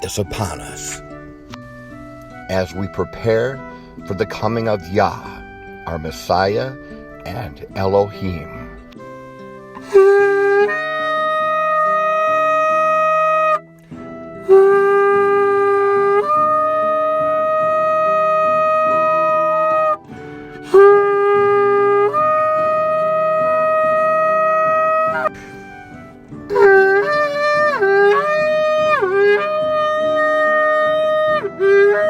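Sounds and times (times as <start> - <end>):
background music with low notes: 0.0 - 32.0
shofar blasts: 9.8 - 13.7, 14.3 - 32.0.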